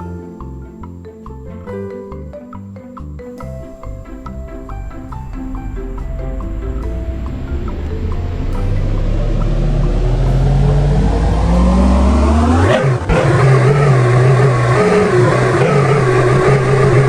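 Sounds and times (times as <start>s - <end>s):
engine revving up: 3.9s - 17.0s.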